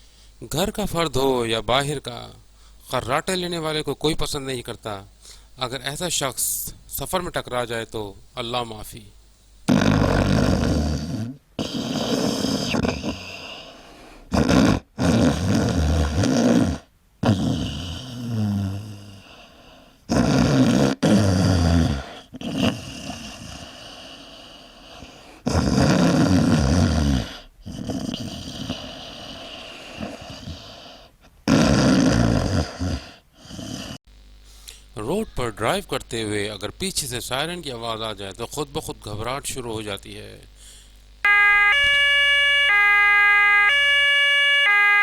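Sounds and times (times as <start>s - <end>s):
person snoring loudly: 9.7s - 34.0s.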